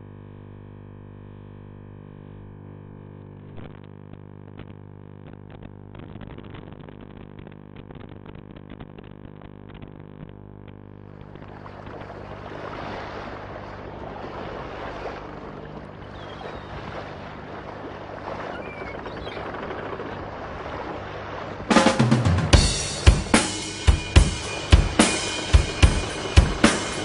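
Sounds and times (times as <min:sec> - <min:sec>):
boat rushing over water: 0:11.2 - 0:27.0.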